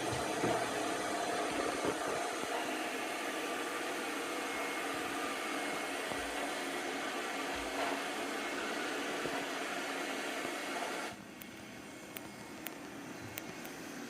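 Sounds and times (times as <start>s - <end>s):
vacuum suction motor whirring: 0.0s - 14.0s.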